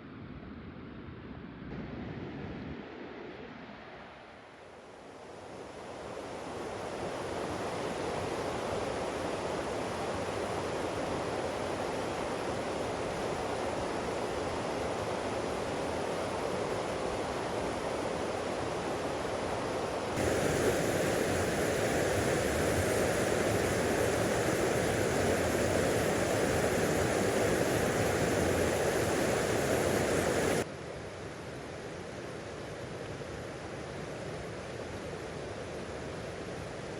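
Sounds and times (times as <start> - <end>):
rushing river: 20.2 - 30.6.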